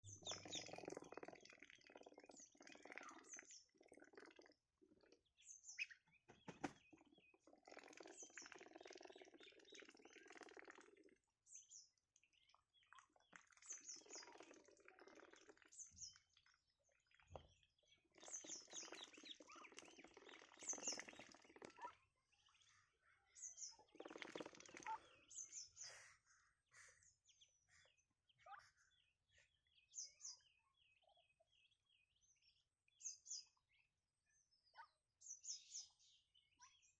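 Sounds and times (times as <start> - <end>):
ducks feeding: 0.2 - 3.2, 18.3 - 22.8, 23.8 - 27.0.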